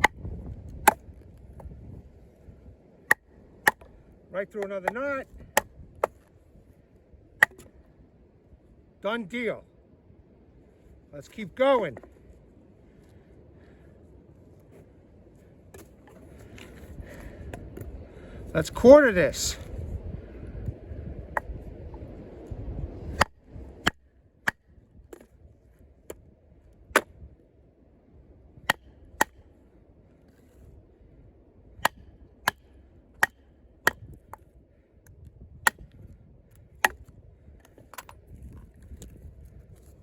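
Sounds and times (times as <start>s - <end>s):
baton striking knife spine: 7.4s - 7.7s.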